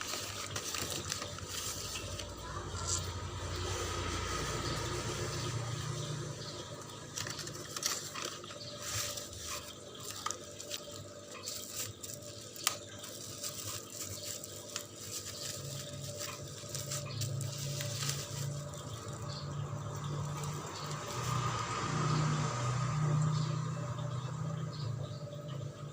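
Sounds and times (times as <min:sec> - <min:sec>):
package rustling: 0:00.0 - 0:02.4, 0:07.0 - 0:19.3.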